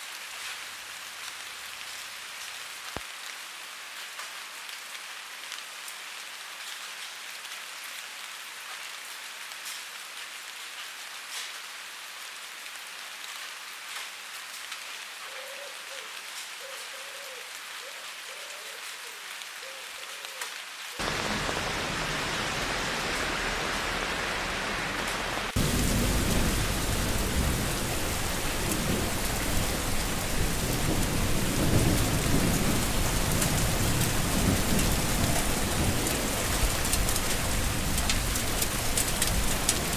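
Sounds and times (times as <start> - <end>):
water drips: 21.0 - 29.6
water running off rain gutter: 21.0 - 39.9.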